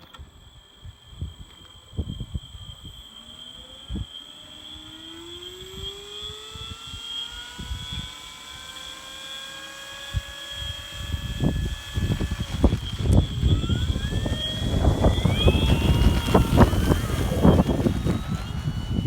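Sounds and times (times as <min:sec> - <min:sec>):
electric motor and propeller whine: 0:00.0 - 0:19.0
wind buffeting microphone: 0:10.7 - 0:19.0.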